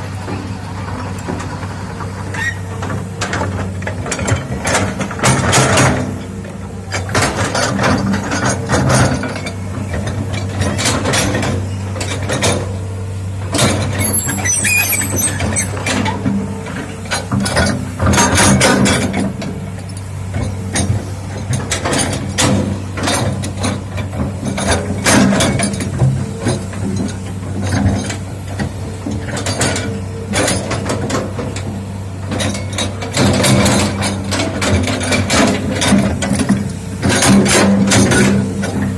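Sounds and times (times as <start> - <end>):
excavator diesel engine running: 0.0 - 38.9
machine clanks and knocks: 1.1 - 12.8, 13.4 - 38.9
high metallic squealing: 13.9 - 15.9.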